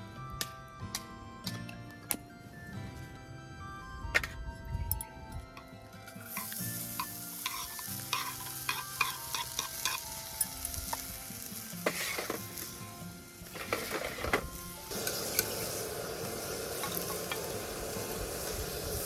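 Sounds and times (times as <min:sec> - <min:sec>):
quiet background music: 0:00.0 - 0:19.0
food sizzling in a pan: 0:06.2 - 0:19.0
utensil scraping a pan: 0:06.3 - 0:10.1, 0:11.8 - 0:12.6, 0:13.5 - 0:15.6.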